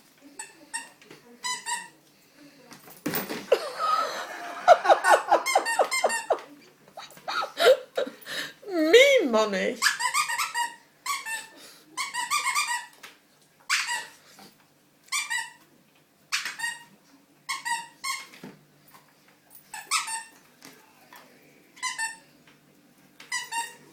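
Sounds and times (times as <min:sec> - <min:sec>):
squeaky toy squeaks: 0:00.4 - 0:02.0, 0:05.4 - 0:06.4, 0:09.8 - 0:13.0, 0:13.7 - 0:14.2, 0:15.1 - 0:15.6, 0:16.3 - 0:16.9, 0:17.5 - 0:18.4, 0:19.7 - 0:20.4, 0:21.8 - 0:22.3, 0:23.2 - 0:23.9.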